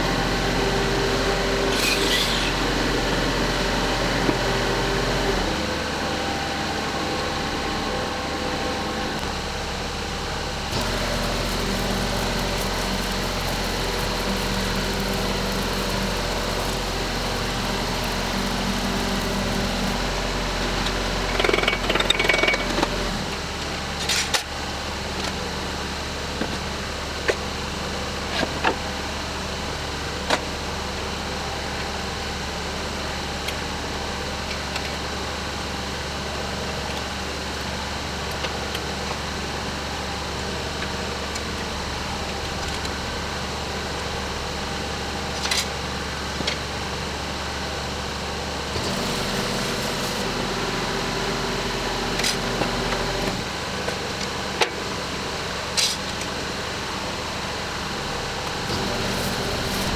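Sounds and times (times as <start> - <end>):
engine running: 0.0 - 23.5, 48.6 - 54.2, 58.0 - 59.9.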